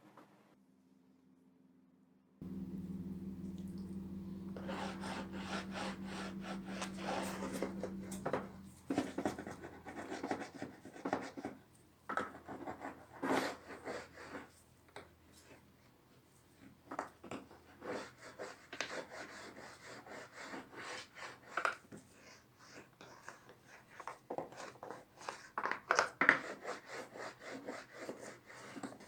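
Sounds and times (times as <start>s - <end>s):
steady low hum: 2.4s - 10.2s
hands rubbing wooden tray: 2.7s - 10.4s.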